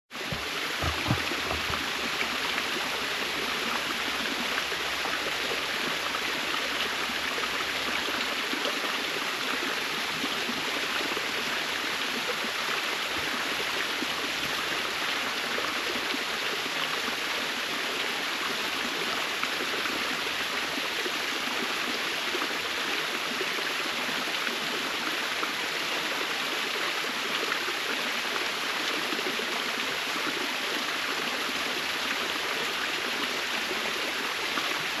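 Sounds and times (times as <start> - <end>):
waterfall rushing: 0.2 - 6.0.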